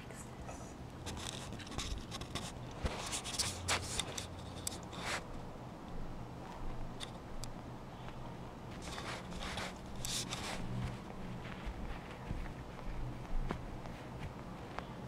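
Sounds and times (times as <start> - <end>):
soft scratching and rubbing: 0.0 - 5.3, 8.7 - 15.0.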